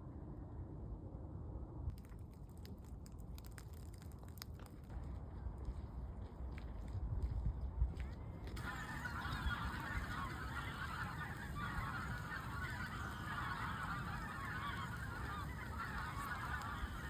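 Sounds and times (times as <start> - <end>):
geese honking: 8.6 - 17.0.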